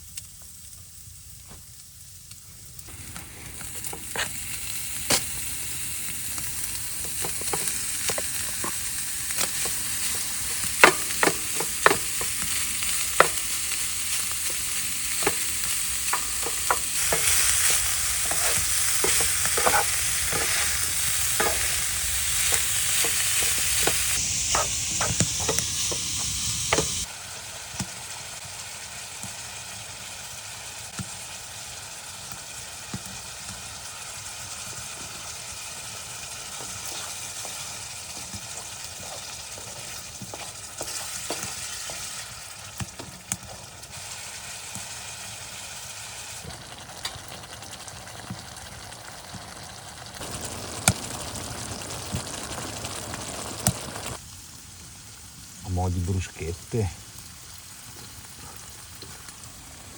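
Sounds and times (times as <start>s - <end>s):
food sizzling in a pan: 0.0s - 59.9s
utensil tapping against pan: 6.4s - 27.0s.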